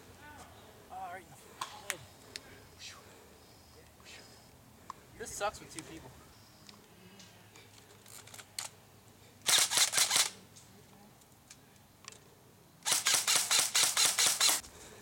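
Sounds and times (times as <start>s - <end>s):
airsoft rifle rapid fire: 9.4s - 10.4s, 12.8s - 14.6s.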